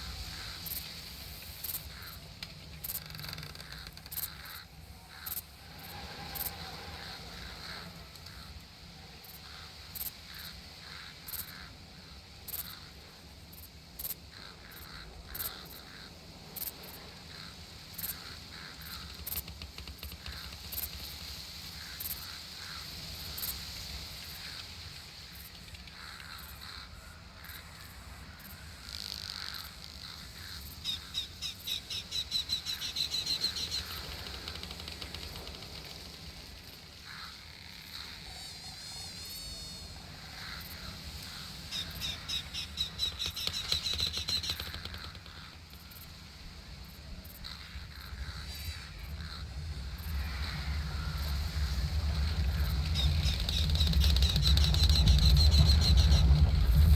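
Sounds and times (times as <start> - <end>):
birds calling: 0.0 - 56.9
high insect drone: 0.0 - 56.9
short insect chirps: 16.4 - 56.9.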